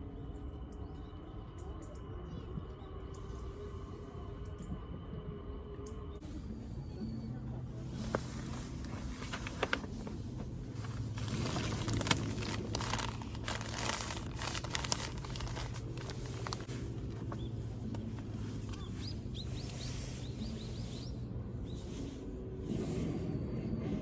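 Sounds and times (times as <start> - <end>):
steady low hum: 0.0 - 24.0
gear clicking and crinkling: 8.0 - 19.8.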